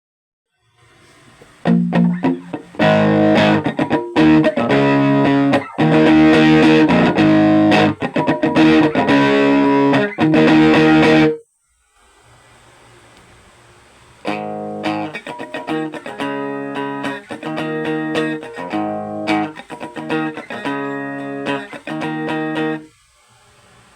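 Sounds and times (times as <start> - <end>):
faint amp hiss: 0.5 - 23.9
electric guitar chords: 1.6 - 11.4, 14.2 - 22.9.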